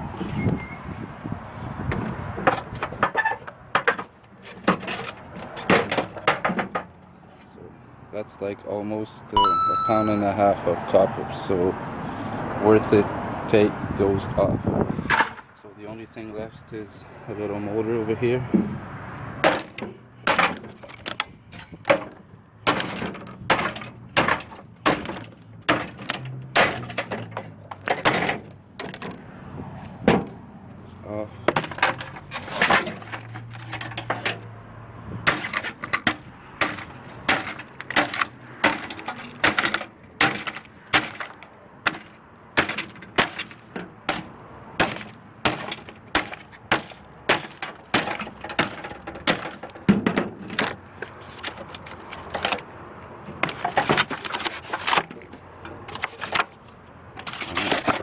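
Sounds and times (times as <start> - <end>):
metal knocking and clanking: 1.9 - 7.1, 15.1 - 15.5, 19.4 - 29.2, 30.0 - 30.4, 31.4 - 34.5, 35.2 - 58.0.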